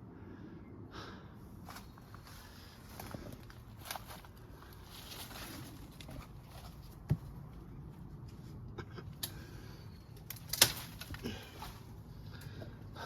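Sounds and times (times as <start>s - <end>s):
quiet rustling: 1.6s - 8.5s.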